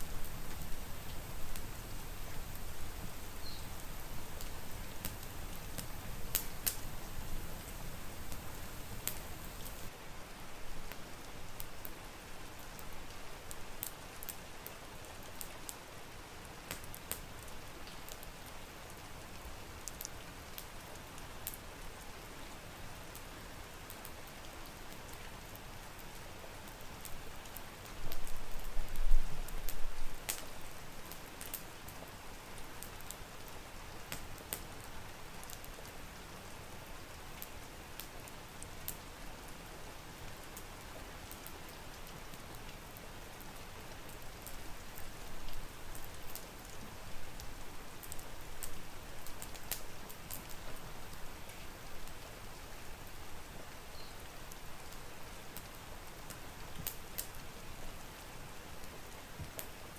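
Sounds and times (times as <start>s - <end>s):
wood fire crackling: 0.0s - 9.9s, 16.6s - 18.3s, 26.7s - 36.0s, 36.9s - 39.3s, 43.9s - 53.5s, 54.5s - 59.9s
steady rain: 0.0s - 59.9s.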